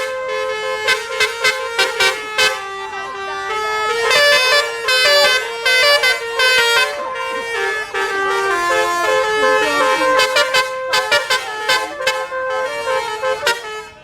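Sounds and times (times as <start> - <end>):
musical air horn: 0.0 - 14.0.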